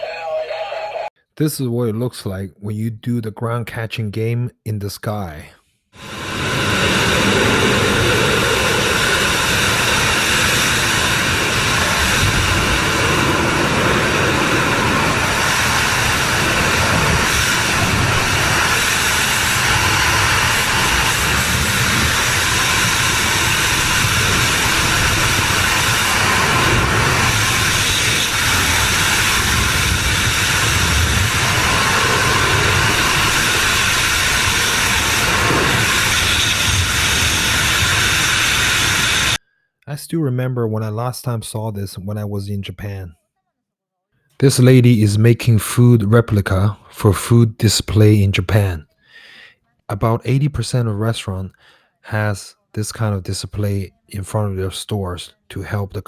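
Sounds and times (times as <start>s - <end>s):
roar of rushing air: 6.0s - 39.4s.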